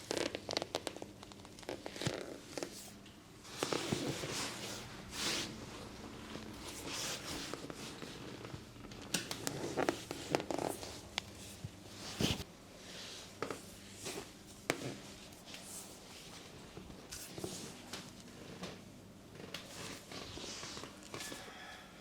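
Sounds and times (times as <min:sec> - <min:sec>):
hands rustling on cloth: 0:03.4 - 0:08.5, 0:09.3 - 0:17.9.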